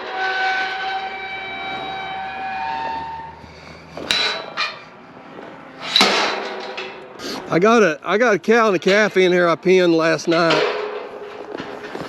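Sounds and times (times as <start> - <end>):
metal gate squealing: 0.0 - 5.0, 5.8 - 7.1
metallic gate clanks: 4.0 - 4.9, 5.8 - 7.2, 8.7 - 9.5, 10.2 - 12.0.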